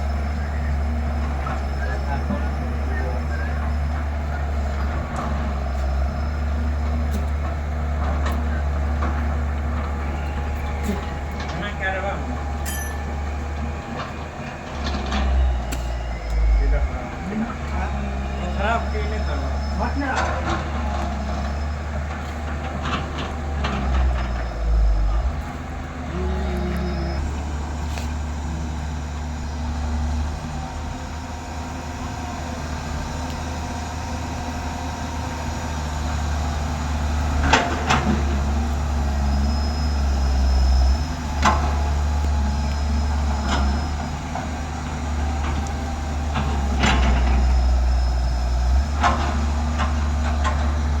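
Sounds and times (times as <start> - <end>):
heavy diesel engine running: 0.0 - 51.0.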